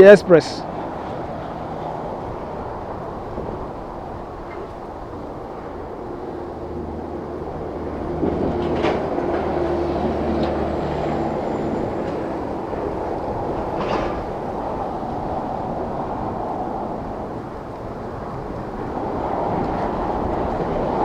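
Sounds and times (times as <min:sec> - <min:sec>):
heavy vehicle engine passing: 0:00.0 - 0:17.7.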